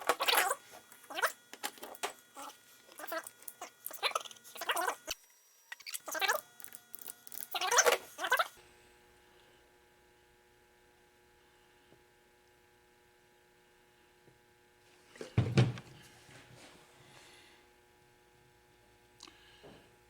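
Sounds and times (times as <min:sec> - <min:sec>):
faint electrical hum: 0:00.0 - 0:20.0
handling noises: 0:15.1 - 0:16.8
dull thunk: 0:15.2 - 0:16.0.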